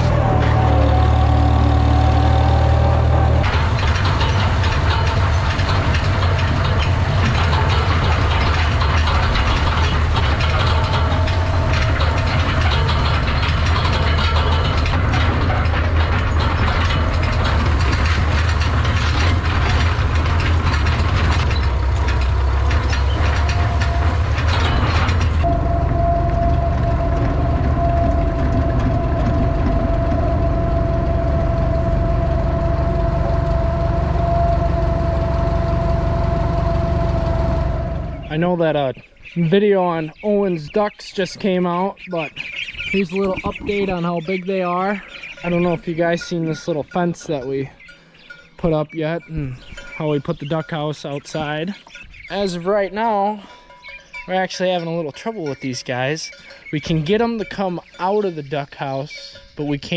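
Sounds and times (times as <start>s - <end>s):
dense mechanical clatter: 0.0s - 58.8s
tractor engine running: 0.0s - 59.9s
thin steady whine: 25.4s - 37.7s.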